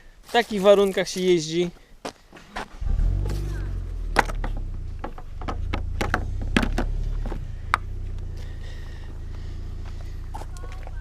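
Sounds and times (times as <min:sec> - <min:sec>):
car engine idling: 0:02.8 - 0:11.0
sharp clicks and knocks: 0:04.1 - 0:07.9.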